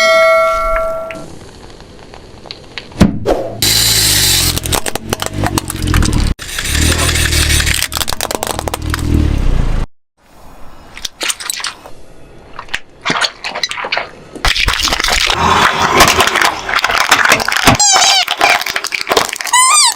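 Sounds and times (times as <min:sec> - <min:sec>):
brittle things crunching: 0:04.2 - 0:09.3, 0:12.7 - 0:19.9.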